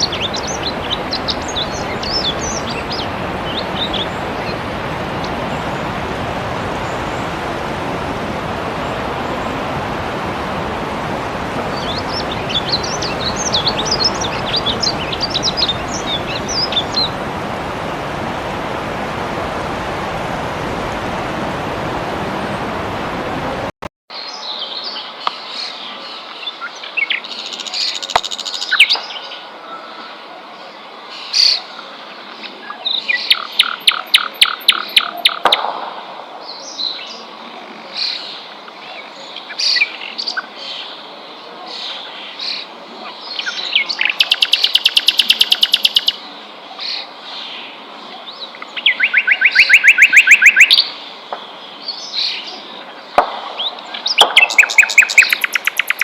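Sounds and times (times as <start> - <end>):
songbirds chirping: 0.0 - 21.0, 24.1 - 56.0
bird trills: 43.9 - 46.2, 48.8 - 50.9, 53.4 - 56.0.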